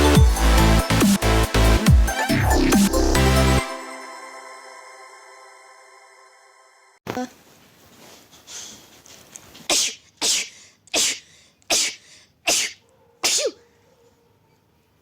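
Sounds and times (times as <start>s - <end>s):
girl sneezing: 9.7s - 13.6s.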